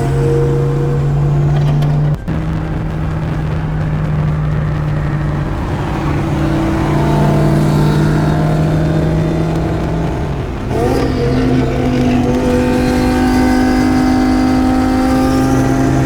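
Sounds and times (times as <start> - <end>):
car engine humming: 0.0 - 16.0.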